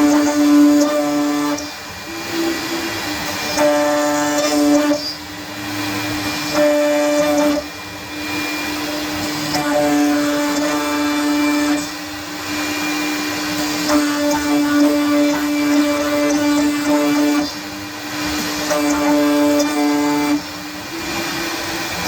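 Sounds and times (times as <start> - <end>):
buzzy cutting tone: 0.0 - 5.2, 5.8 - 7.8, 18.2 - 22.0
router spindle whine: 0.0 - 22.0.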